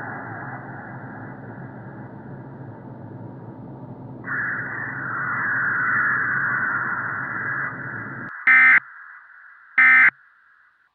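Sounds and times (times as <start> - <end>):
low hum: 0.0 - 8.8
harsh buzzing data burst: 8.5 - 8.8, 9.8 - 10.1.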